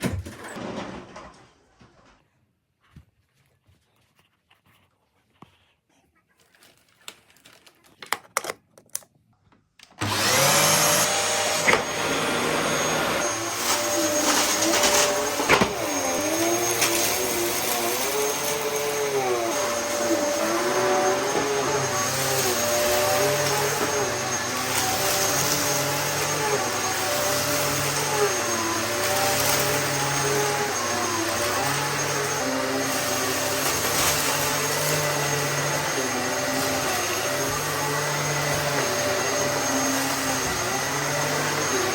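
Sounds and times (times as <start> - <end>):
upright vacuum cleaner running: 10.0 - 41.9.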